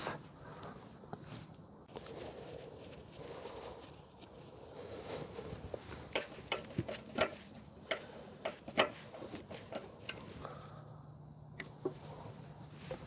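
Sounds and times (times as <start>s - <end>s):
low steady hum: 0.0s - 13.0s
tools and small parts clicking: 6.1s - 10.3s.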